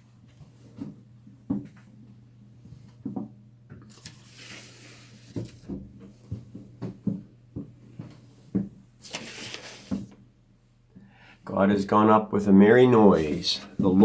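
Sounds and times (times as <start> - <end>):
footsteps on wooden stairs: 0.3 - 1.9, 5.3 - 8.8
clothing rustling: 9.0 - 10.2.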